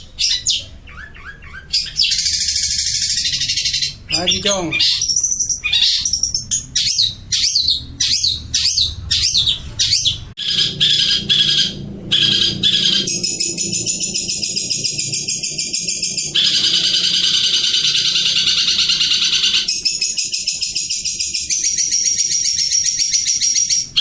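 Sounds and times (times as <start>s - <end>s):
bird fast chatter: 0.0s - 23.5s.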